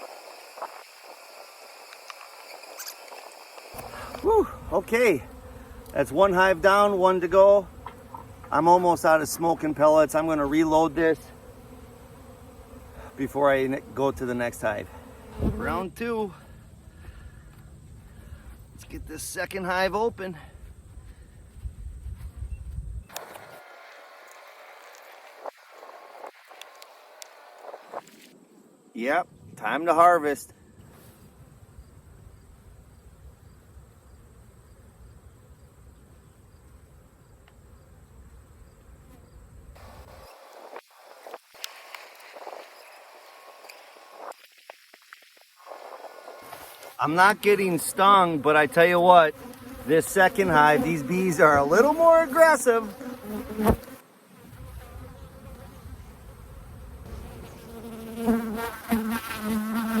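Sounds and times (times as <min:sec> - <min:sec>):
honeybees buzzing: 0:00.0 - 0:16.4, 0:23.1 - 0:28.3, 0:36.9 - 1:00.0.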